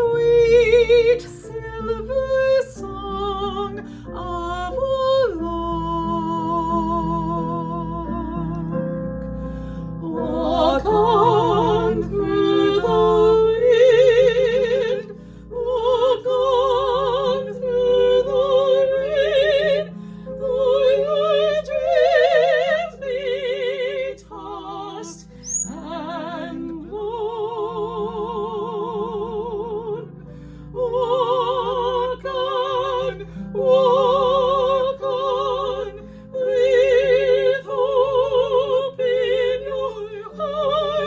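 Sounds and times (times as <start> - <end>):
operatic singing: 0.0 - 8.8, 9.9 - 41.0
high rising squeak: 25.0 - 26.6.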